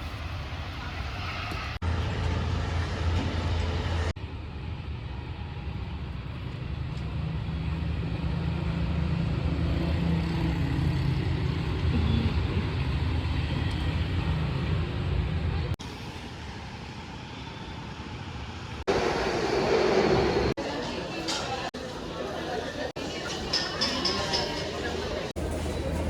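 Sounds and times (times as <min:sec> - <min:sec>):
vehicle running rumble: 0:00.0 - 0:17.1.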